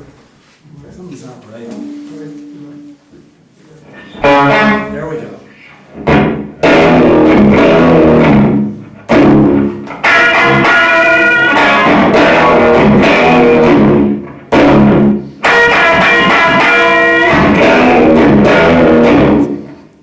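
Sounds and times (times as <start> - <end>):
electric guitar with slapback echo: 4.0 - 5.1, 5.9 - 20.0.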